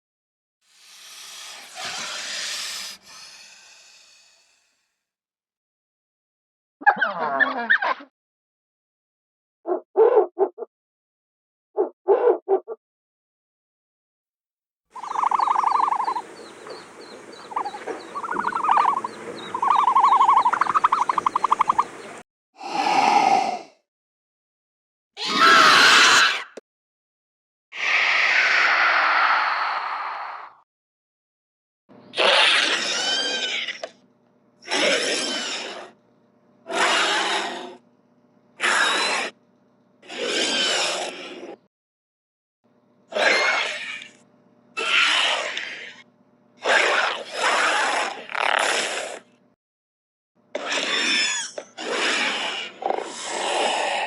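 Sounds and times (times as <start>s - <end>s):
rapid pulsed trilling calls: 15.0s - 22.2s
loud creature calls: 25.2s - 26.5s, 32.2s - 34.0s, 34.6s - 36.0s, 36.7s - 37.8s, 38.6s - 39.4s, 40.0s - 41.5s, 43.1s - 44.2s, 44.8s - 46.0s, 50.6s - 54.0s.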